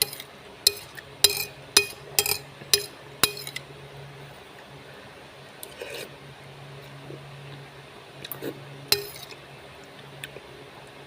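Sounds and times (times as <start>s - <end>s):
utensil clinking against bowl: 0.0s - 3.6s, 8.3s - 9.4s
low steady hum: 0.0s - 11.0s.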